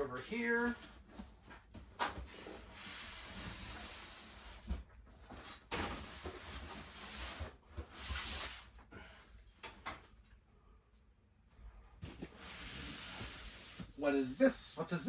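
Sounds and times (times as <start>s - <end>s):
rustling of boxes and toys: 11.8s - 15.0s.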